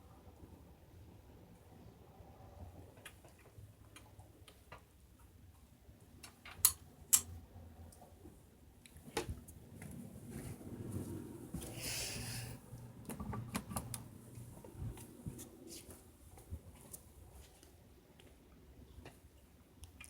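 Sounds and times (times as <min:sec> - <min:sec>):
faint low hum: 0:00.0 - 0:20.0.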